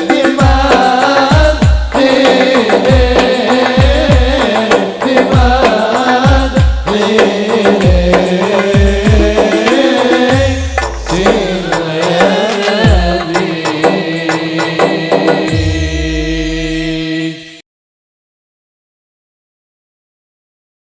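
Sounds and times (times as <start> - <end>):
band playing religious music: 0.0 - 17.6.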